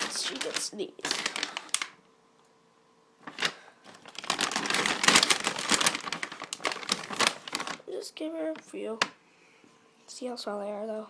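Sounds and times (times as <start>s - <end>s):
treat bag crinkling and rattling: 0.0s - 2.0s, 3.2s - 9.1s.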